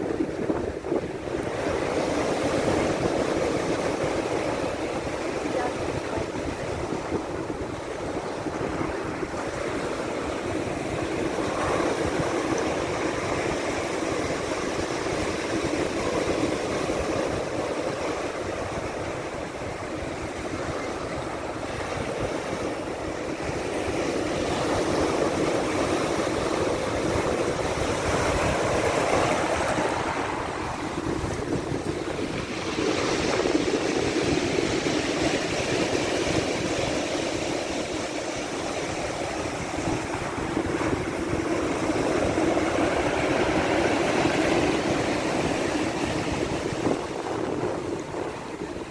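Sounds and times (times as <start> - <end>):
waves washing in: 0.0 - 48.9.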